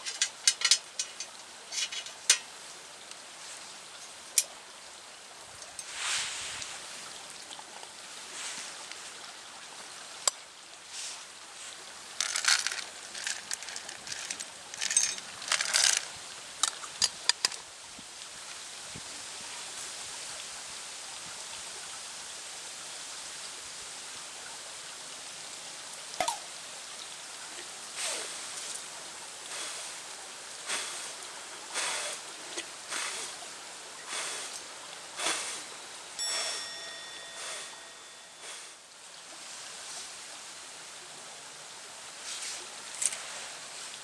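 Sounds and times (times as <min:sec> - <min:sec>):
wood pellets rattling into steel: 0:00.0 - 0:02.5, 0:12.1 - 0:17.6
steady hiss: 0:00.0 - 0:21.1, 0:23.0 - 0:44.0.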